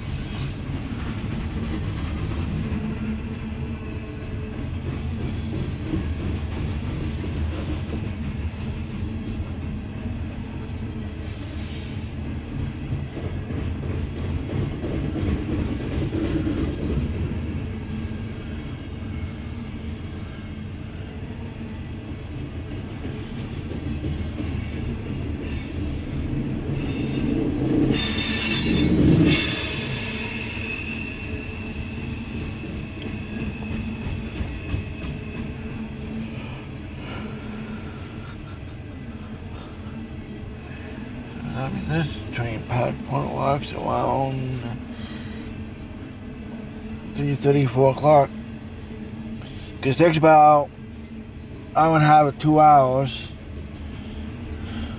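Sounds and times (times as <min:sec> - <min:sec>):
train wheels rumbling on rails: 0:00.0 - 0:54.9
high-pitched wheel squeal: 0:27.9 - 0:34.1.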